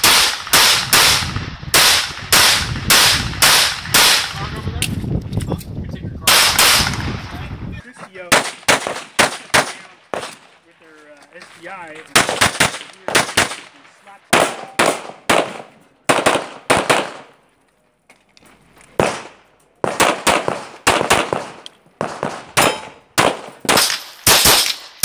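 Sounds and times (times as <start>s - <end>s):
pistol shots: 0.0s - 4.4s, 6.3s - 7.1s, 8.3s - 10.4s, 12.1s - 17.3s, 19.0s - 25.0s.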